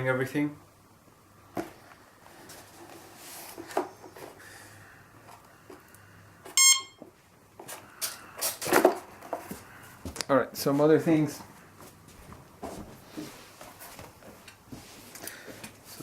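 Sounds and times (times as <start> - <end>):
short electronic beep: 6.6 - 7.0.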